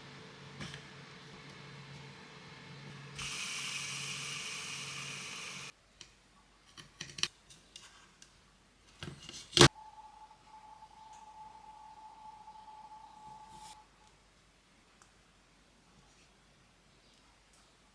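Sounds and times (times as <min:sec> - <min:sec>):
steady whirring: 0:00.0 - 0:05.7
faint steady tone: 0:09.7 - 0:14.3.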